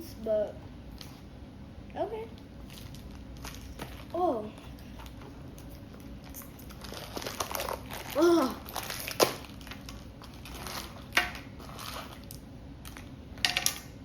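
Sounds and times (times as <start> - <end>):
packaging crinkling and rustling: 2.6 - 13.1.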